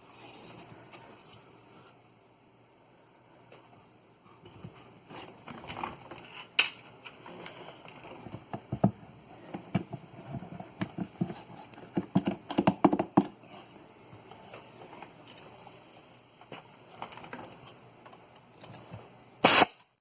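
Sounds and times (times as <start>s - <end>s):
wood pieces and tools knocking: 8.3s - 13.4s.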